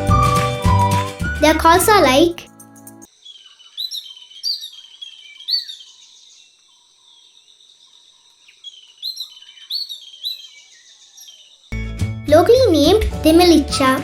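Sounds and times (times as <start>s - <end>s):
bird calling sharp notes: 3.2s - 6.3s, 8.5s - 11.5s.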